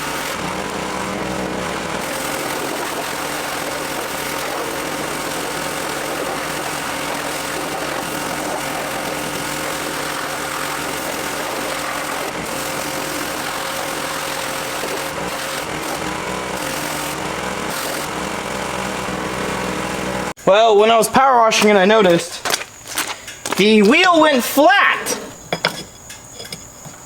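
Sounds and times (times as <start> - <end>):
pressure washer motor hum: 0.0 - 20.4.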